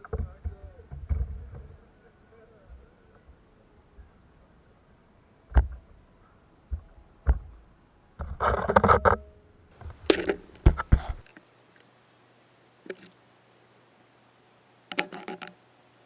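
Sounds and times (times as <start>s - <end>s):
faint steady hum: 0.0s - 16.0s
scraping rustle: 8.2s - 9.2s.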